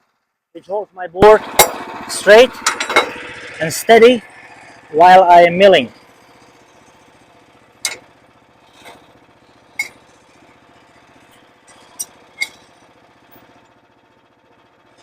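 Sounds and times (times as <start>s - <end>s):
small engine idling: 0.0s - 15.0s
metal knocks and clinks: 2.6s - 3.2s, 7.8s - 13.6s.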